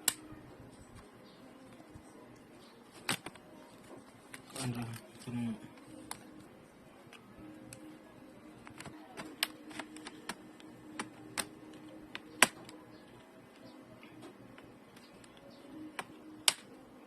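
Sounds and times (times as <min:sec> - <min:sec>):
faint steady hum: 0:00.0 - 0:17.0
plastic snap: 0:03.0 - 0:03.4, 0:08.6 - 0:12.8, 0:14.2 - 0:16.7.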